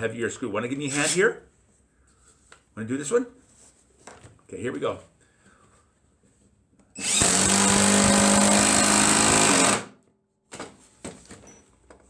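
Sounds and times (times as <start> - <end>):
impact driver hammering: 7.0 - 10.0.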